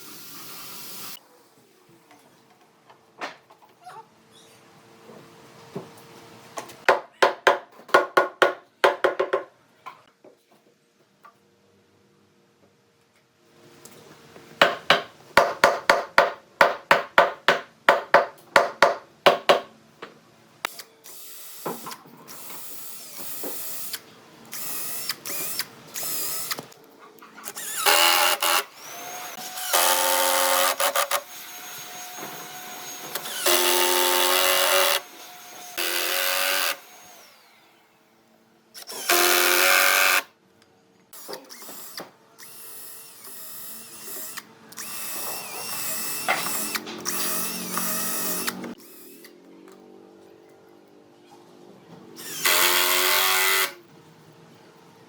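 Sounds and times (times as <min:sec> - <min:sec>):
power tool motor running: 0:27.5 - 0:37.7, 0:43.2 - 0:49.4.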